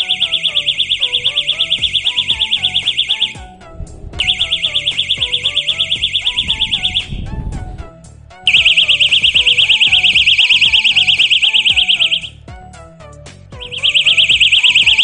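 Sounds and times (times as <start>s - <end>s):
fishing bite alarm beeping: 0.0s - 3.5s, 4.2s - 7.2s, 8.5s - 12.4s, 13.6s - 15.0s
background music: 0.0s - 15.0s.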